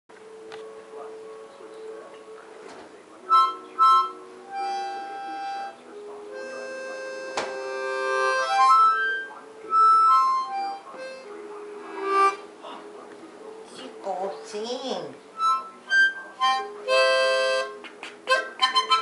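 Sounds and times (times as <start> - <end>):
harmonica chords and notes: 3.2 - 12.8, 15.4 - 19.0.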